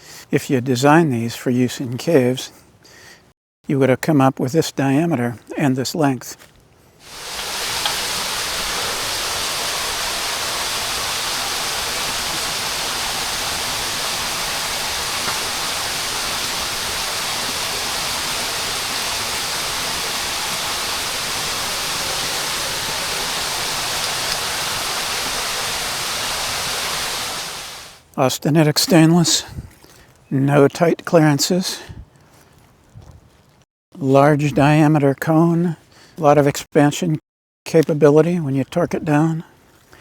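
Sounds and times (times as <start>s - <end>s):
running water rushing: 7.0s - 28.0s.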